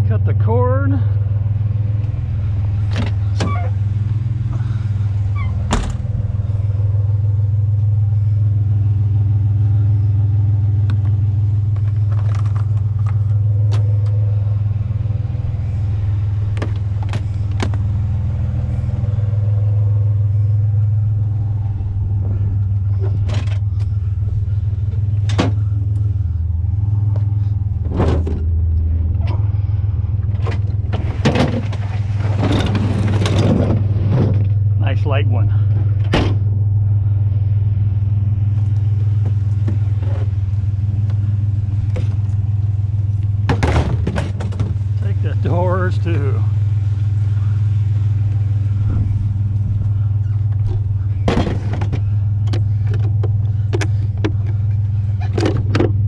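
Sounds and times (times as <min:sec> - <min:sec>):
truck engine rumble: 0:00.0 - 0:56.0
sharp knocks and rattles: 0:43.4 - 0:45.0.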